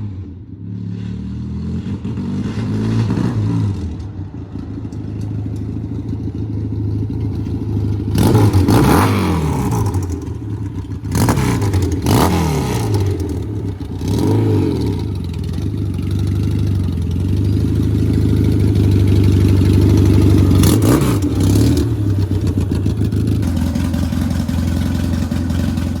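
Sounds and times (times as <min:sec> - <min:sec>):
twin engine revving: 0:06.4 - 0:26.0.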